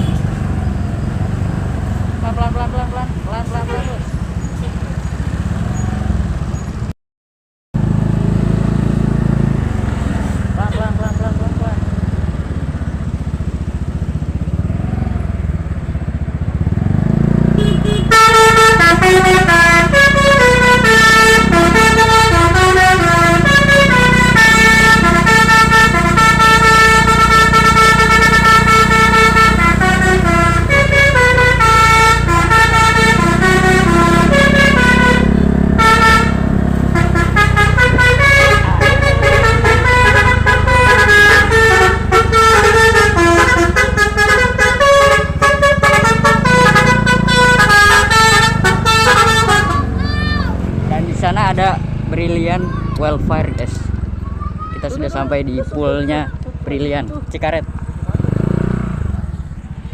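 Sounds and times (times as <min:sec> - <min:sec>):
musical bus horn melody: 0:00.0 - 0:00.4, 0:17.5 - 0:50.4
bus engine rumble: 0:00.0 - 0:06.9, 0:07.8 - 0:59.9.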